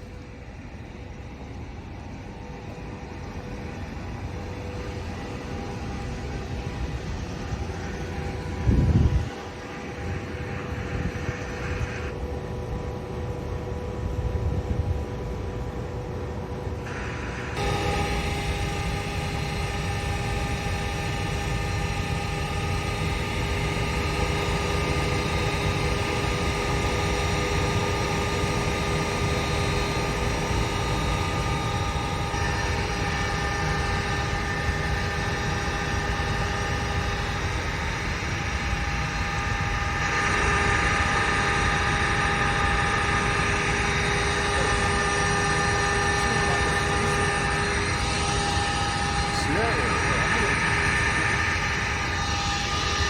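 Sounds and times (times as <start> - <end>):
faint steady tones: 0.0 - 53.0
gusty wind: 3.4 - 19.3.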